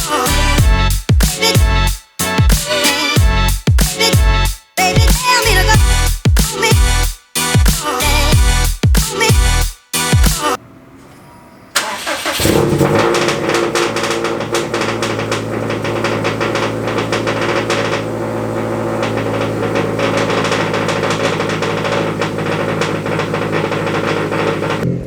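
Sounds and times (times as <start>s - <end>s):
car engine starting and idling: 10.6s - 25.0s.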